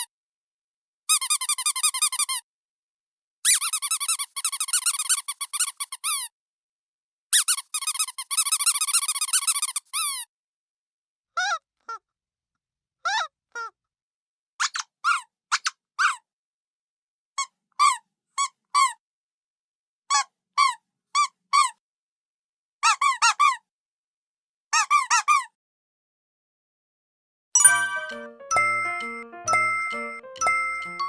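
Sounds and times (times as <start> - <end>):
squeaky dog toy squeaks: 1.1 - 2.4, 3.4 - 6.3, 7.3 - 10.3, 11.4 - 12.0, 14.6 - 16.3, 17.4 - 19.0, 20.1 - 21.8, 22.8 - 23.7, 24.7 - 25.6.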